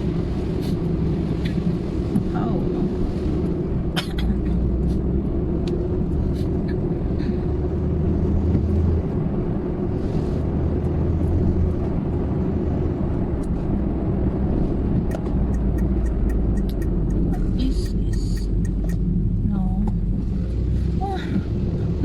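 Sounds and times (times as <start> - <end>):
road and engine rumble: 0.0 - 22.0.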